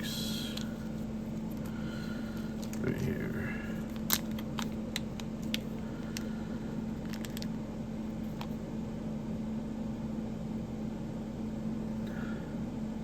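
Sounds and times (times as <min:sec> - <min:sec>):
steady background hum: 0:00.0 - 0:13.0
ceramic balls and metal parts clicking: 0:07.0 - 0:07.5.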